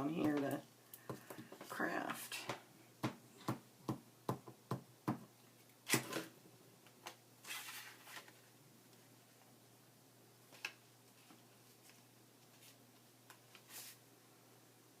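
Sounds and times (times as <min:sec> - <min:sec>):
paper rustling: 0:07.4 - 0:08.5.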